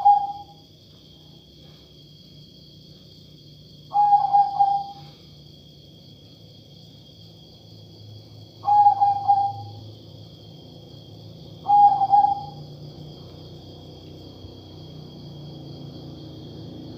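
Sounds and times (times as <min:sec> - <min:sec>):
dove cooing: 0:00.0 - 0:00.6, 0:03.9 - 0:05.1, 0:08.6 - 0:09.8, 0:11.6 - 0:12.7.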